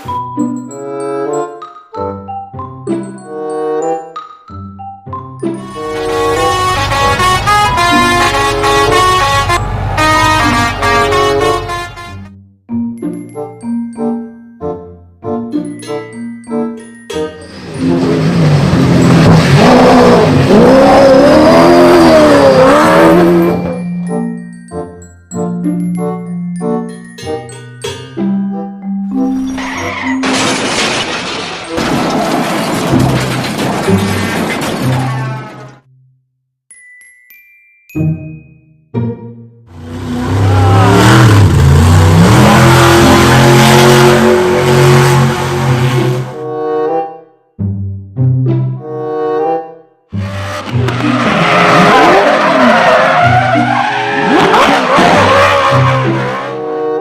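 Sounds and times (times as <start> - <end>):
race car engine revving: 17.7 - 23.8, 39.7 - 46.4, 50.2 - 56.7.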